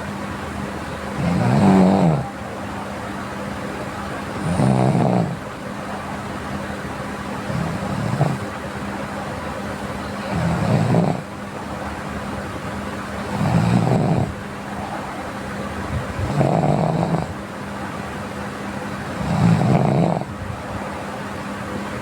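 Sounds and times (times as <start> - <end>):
steady background hum: 0.0 - 22.0
person snoring: 1.2 - 2.3, 4.4 - 5.4, 7.5 - 8.5, 10.3 - 11.2, 13.3 - 14.4, 16.2 - 17.3, 19.2 - 20.3.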